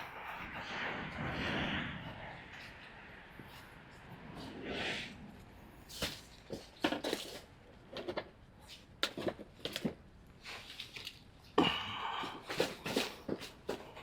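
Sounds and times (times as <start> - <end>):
objects knocking and clattering: 6.0 - 8.4.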